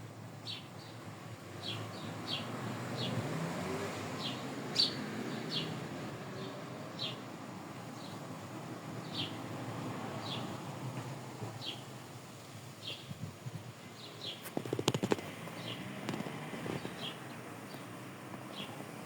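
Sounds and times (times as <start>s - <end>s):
finch chirping: 4.2s - 5.8s
sharp taps and clicks: 14.5s - 15.2s.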